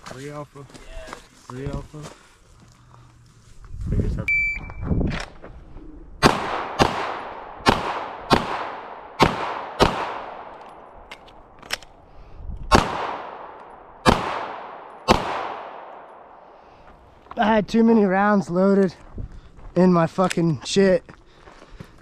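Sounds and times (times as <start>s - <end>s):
shot timer beep: 4.3s - 4.8s
gunshots in quick pairs: 6.2s - 10.5s, 12.7s - 16.1s.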